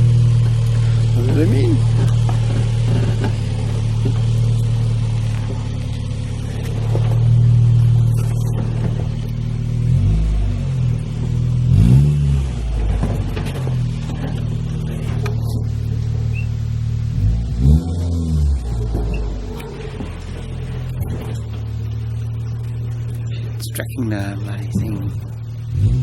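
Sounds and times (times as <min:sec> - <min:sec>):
vehicle engine running: 0:00.0 - 0:26.0.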